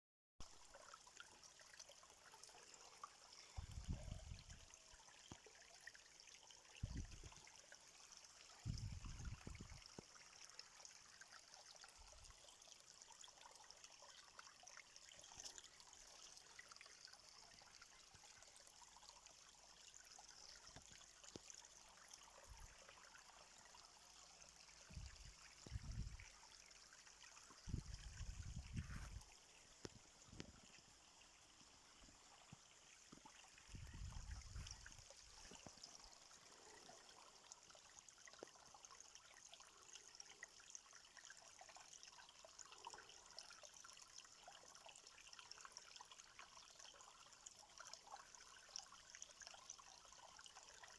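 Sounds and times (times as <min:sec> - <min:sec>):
small stream trickling: 0:00.4 - 0:50.9.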